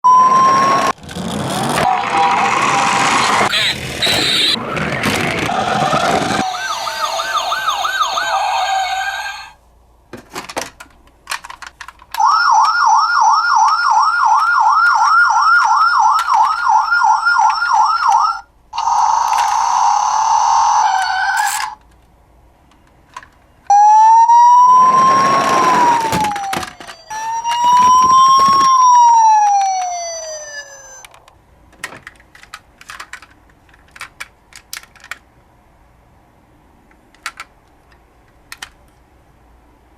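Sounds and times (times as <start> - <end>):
toy electronic siren: 0.1 - 1.0, 1.8 - 4.6, 5.5 - 9.6, 12.2 - 21.8, 23.7 - 31.1.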